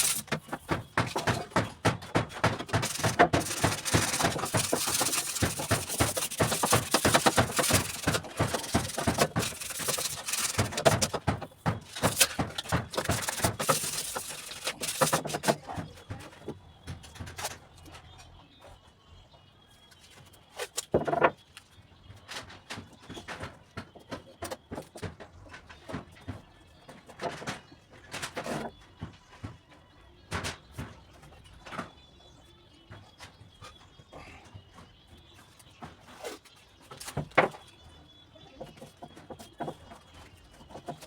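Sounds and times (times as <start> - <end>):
spray can ball rattling: 0.0 - 0.4, 2.8 - 11.2, 11.9 - 15.5.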